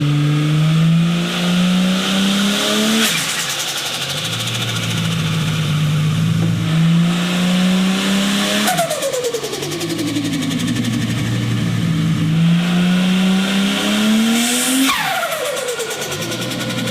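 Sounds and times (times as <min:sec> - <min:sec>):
car engine accelerating hard: 0:00.0 - 0:16.9
turbo whistle spooling down: 0:06.7 - 0:09.4, 0:12.0 - 0:16.9.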